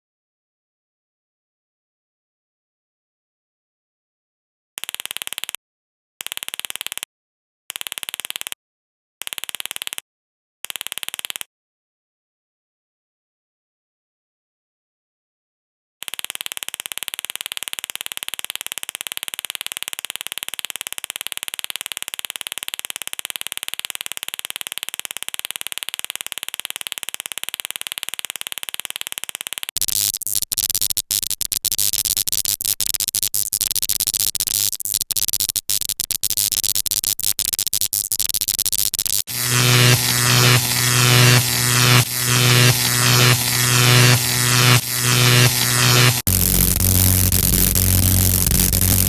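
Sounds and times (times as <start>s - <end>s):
electric buzz: 29.8s - 49.0s
pulsing electronic effect: 29.8s - 49.0s
strong low hum: 39.3s - 49.0s.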